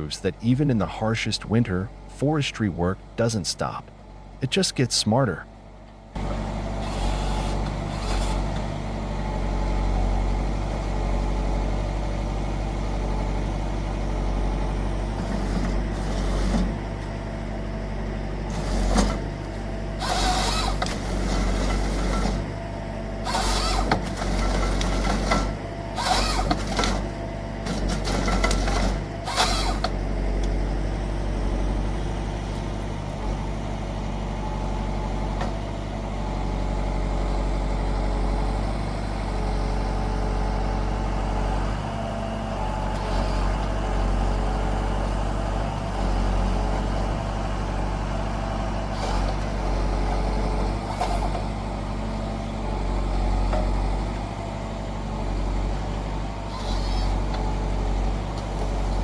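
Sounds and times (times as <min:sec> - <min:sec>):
harvester engine running: 0:00.0 - 0:59.0
harsh bursts of timber cutting: 0:06.2 - 0:08.7, 0:18.5 - 0:22.6, 0:23.2 - 0:29.9, 0:48.8 - 0:49.6, 0:56.5 - 0:57.3.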